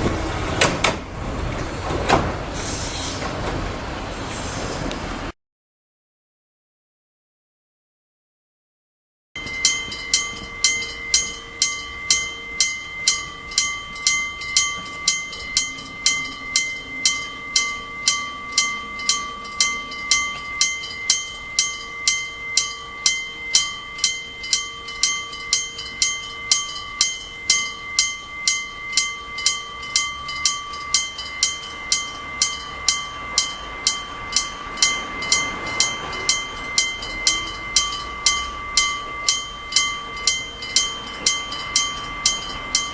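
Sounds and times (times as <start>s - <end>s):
level-crossing warning bell ringing: 9.4s - 42.9s.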